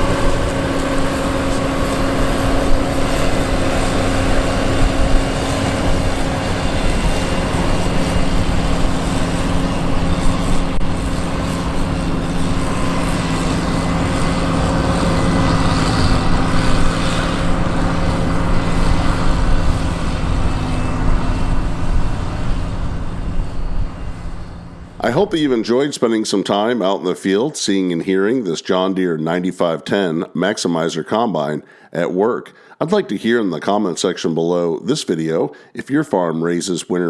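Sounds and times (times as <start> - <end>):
whirring threshing machinery: 0.0 - 25.6
combine diesel engine hum: 0.0 - 25.7.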